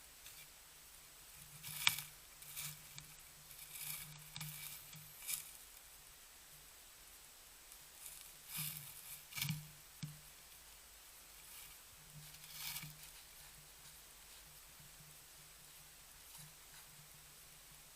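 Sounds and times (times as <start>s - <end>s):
soft crunches in snow: 1.3s - 5.8s, 7.7s - 9.7s, 11.2s - 15.2s.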